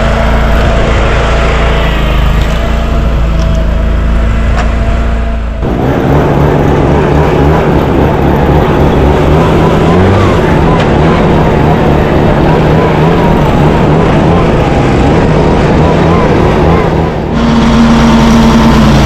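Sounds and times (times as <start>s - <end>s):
busier engine sound: 0.0s - 19.0s
loud engine running: 0.0s - 19.0s.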